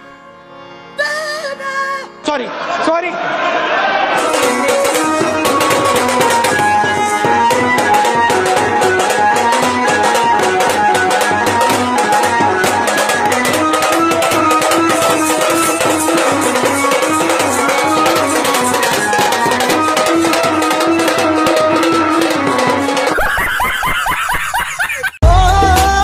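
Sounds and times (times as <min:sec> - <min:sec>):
fast drum beat: 0:04.2 - 0:26.0
instrumental melody: 0:04.2 - 0:26.0.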